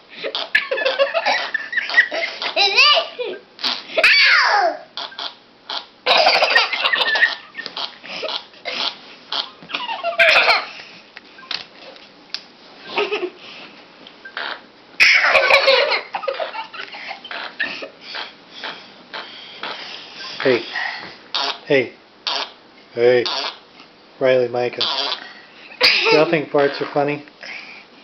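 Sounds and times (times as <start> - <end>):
children giggling and laughing: 0.2 - 3.5, 6.0 - 9.0, 9.7 - 10.8, 12.8 - 13.4, 15.0 - 18.7, 25.7 - 26.5
fart noises sliding down in pitch: 3.6 - 4.0, 14.4 - 14.6, 24.8 - 25.2.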